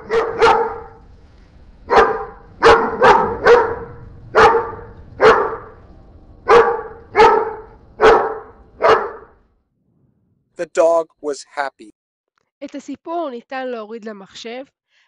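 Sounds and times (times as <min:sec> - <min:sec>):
dog barking: 0:00.0 - 0:01.0, 0:01.9 - 0:05.8, 0:06.5 - 0:09.3.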